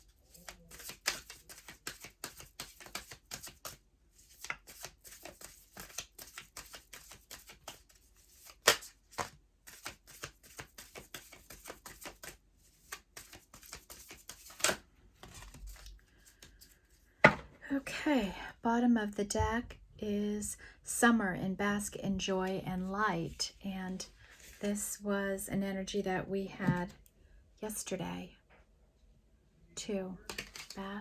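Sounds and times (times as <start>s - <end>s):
cards being shuffled: 0.3s - 16.8s, 30.3s - 30.8s.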